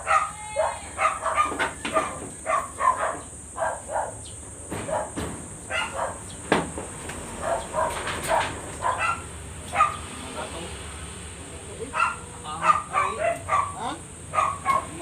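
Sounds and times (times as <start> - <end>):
dog barking: 0.0 - 4.2, 4.8 - 6.3, 7.4 - 10.1, 11.9 - 15.0.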